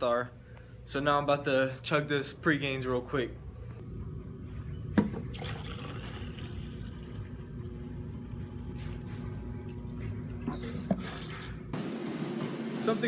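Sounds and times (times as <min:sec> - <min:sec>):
drink being chugged: 0:05.3 - 0:07.6.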